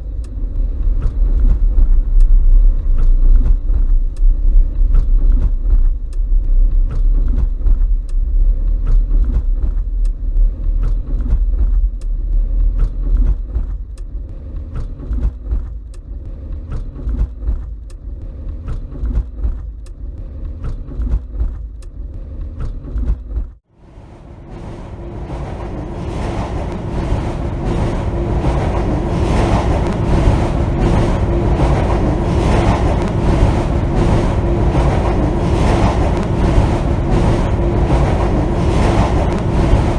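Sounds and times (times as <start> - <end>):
deep rumble: 0.0 - 39.9
noisy wash: 23.7 - 39.9
steady hum: 23.7 - 39.9
scattered clicks: 25.2 - 39.9.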